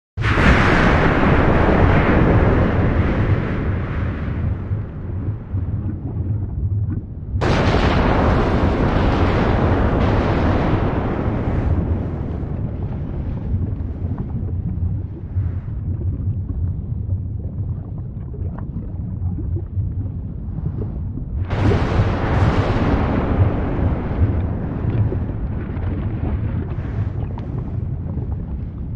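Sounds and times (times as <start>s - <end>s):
deep steady rumble: 0.2s - 28.9s
faint crackles: 0.2s - 28.9s.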